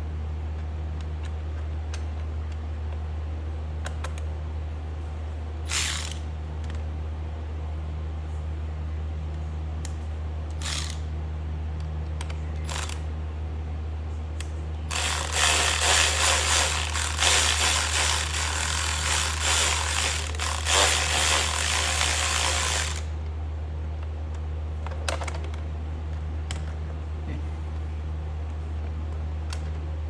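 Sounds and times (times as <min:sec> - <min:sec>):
tool ratcheting and scraping: 0:05.7 - 0:06.2, 0:10.6 - 0:11.0, 0:12.7 - 0:13.0, 0:14.9 - 0:23.1.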